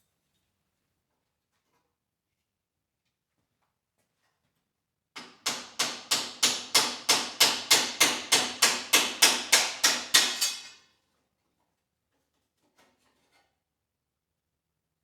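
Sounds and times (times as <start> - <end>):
hammer striking: 5.5 - 10.7.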